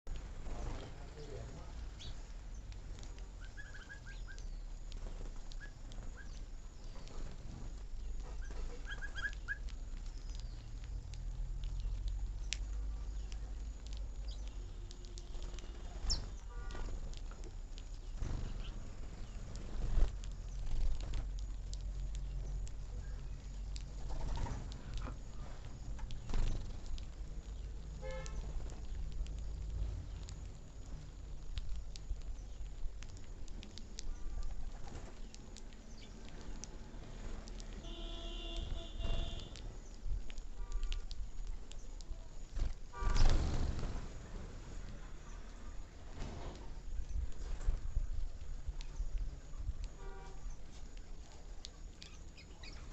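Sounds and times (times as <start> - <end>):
small birds chirping: 0.1 - 52.9
steady low rumble: 9.3 - 37.8
horn toot: 37.8 - 39.6.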